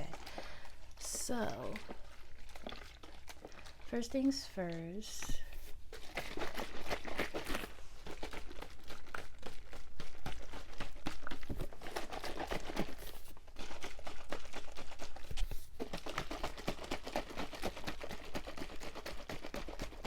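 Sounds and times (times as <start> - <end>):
crinkling and rustling: 0.0 - 17.6.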